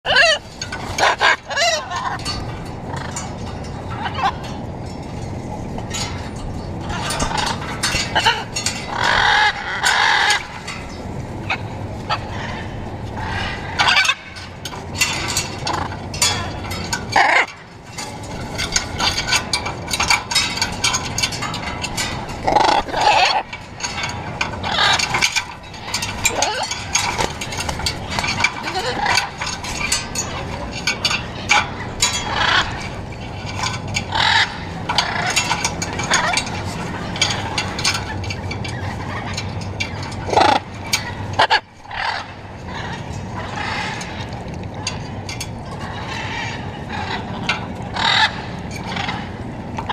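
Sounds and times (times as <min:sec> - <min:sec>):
macaws squawking: 0:00.1 - 0:02.3, 0:07.0 - 0:14.4, 0:15.0 - 0:17.6, 0:22.4 - 0:23.6, 0:24.6 - 0:38.0, 0:38.8 - 0:44.3, 0:45.8 - 0:49.9.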